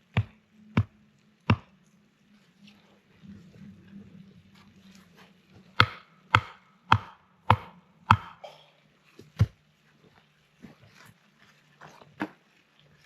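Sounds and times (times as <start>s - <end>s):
sharp chopping: 5.8s - 8.4s.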